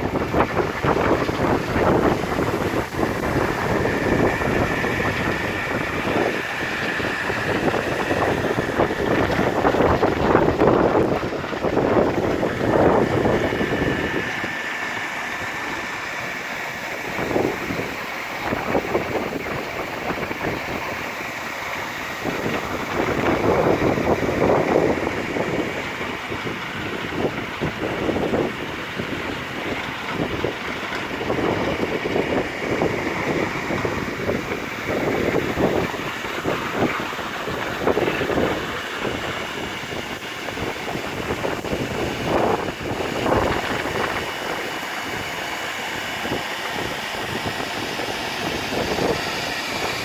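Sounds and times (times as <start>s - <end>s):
line-boring machine whining: 0.0s - 50.0s.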